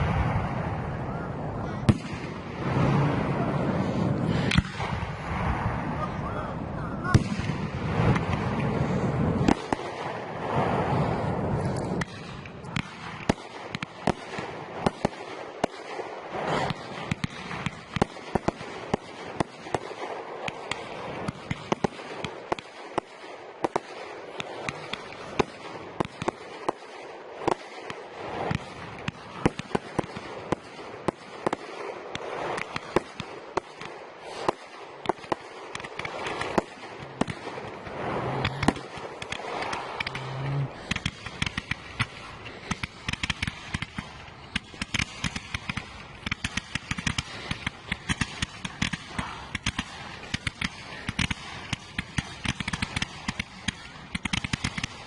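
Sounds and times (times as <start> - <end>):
low rumble of bursts: 0.0 - 13.2, 35.6 - 42.6
fireworks bangs and pops: 0.0 - 55.0.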